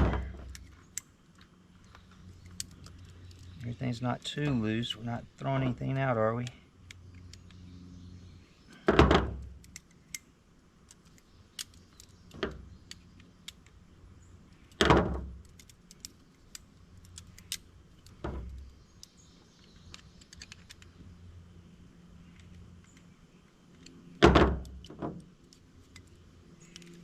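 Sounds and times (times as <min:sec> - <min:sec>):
light clicks and rattles: 0:14.5 - 0:21.2.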